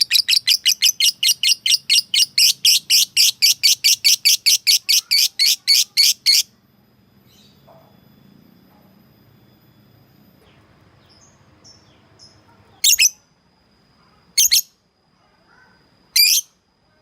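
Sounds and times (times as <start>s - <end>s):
faint bird chirps: 0.0s - 17.0s.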